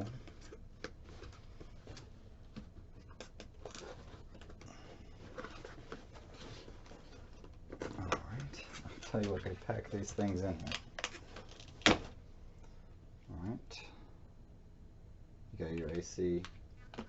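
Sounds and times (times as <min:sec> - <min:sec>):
packaging rustling and clicking: 0:00.2 - 0:12.2.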